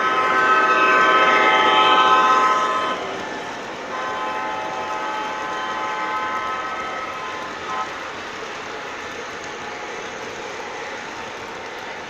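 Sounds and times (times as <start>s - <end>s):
model train horn: 0.0s - 9.0s
train running on track: 0.0s - 12.0s.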